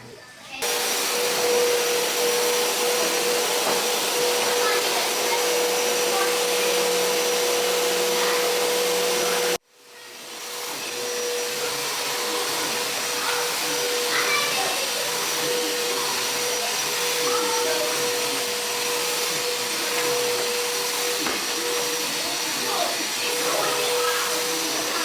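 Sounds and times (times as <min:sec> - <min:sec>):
motor hum: 0:00.6 - 0:09.6
electric blower rushing air: 0:00.6 - 0:25.0.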